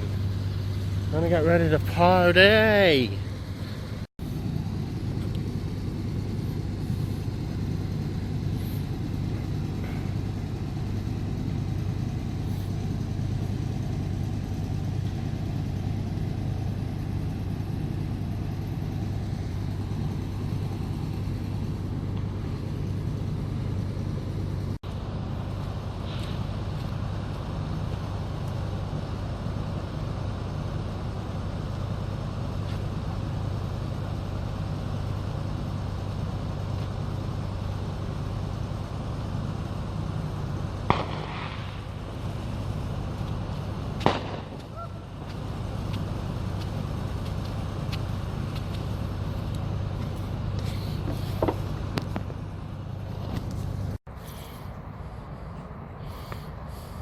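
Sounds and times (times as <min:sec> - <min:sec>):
low hum and rumble: 0:00.0 - 0:57.0
sharp bangs: 0:40.9 - 0:42.3, 0:44.0 - 0:44.9
light crack: 0:44.0 - 0:48.9.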